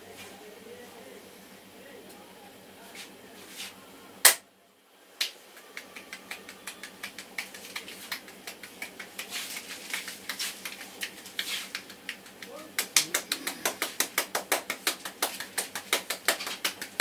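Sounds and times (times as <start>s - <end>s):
sharp crack: 4.2s - 4.4s
hands tapping on head: 5.6s - 17.0s.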